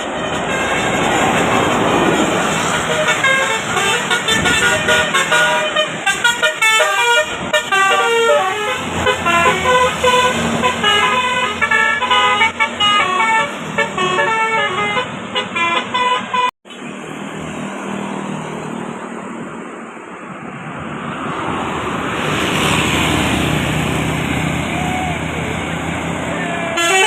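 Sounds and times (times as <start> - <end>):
multi-tone musical bus horn: 0.0 - 16.6, 26.4 - 27.0
steady wind-like rush: 17.2 - 26.8.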